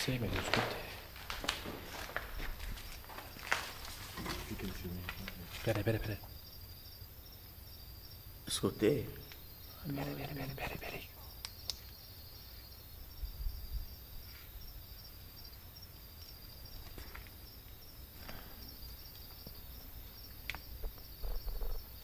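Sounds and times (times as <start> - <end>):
faint rustles and knocks: 0.0 - 6.3
night insects chirping: 0.0 - 22.0.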